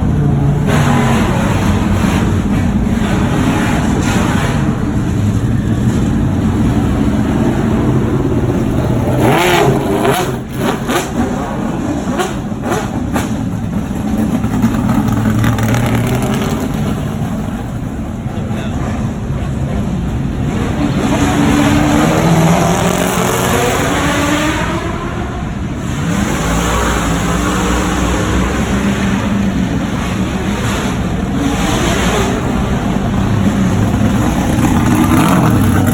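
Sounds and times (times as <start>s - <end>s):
car engines revving past: 0.0s - 35.9s.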